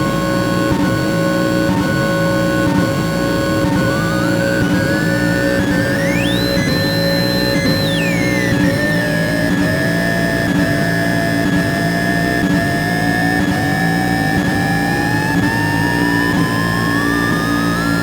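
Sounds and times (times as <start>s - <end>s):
synthesizer drone: 3.1s - 10.3s.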